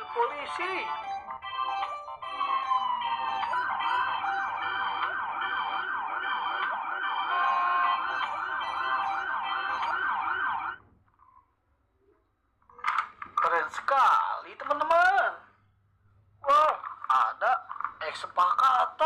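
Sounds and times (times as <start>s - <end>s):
toy electronic siren warbling: 0.0s - 10.8s.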